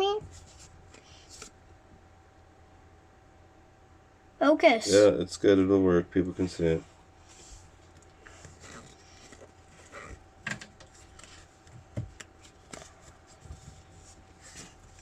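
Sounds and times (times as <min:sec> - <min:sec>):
faint steady hum: 0:00.0 - 0:15.0
cards rustling: 0:07.9 - 0:10.2, 0:10.8 - 0:15.0.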